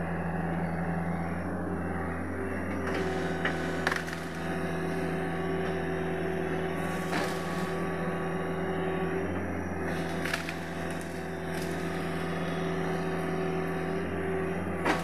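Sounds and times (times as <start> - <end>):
excavator diesel engine running: 0.0 - 15.0
wood cracking and splintering: 3.0 - 4.6, 6.8 - 7.8, 9.9 - 12.4.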